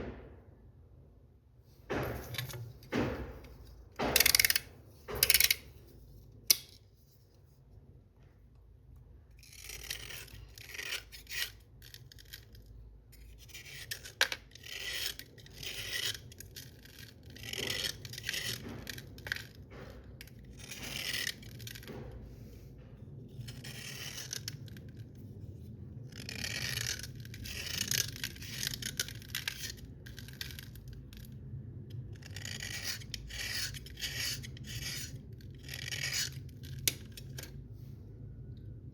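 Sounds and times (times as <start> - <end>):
slate pencils scraping: 9.3 - 37.6.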